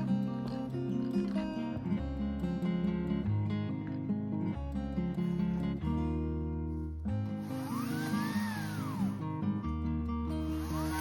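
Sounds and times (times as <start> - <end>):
high gliding tone: 7.4 - 9.2, 10.4 - 11.0.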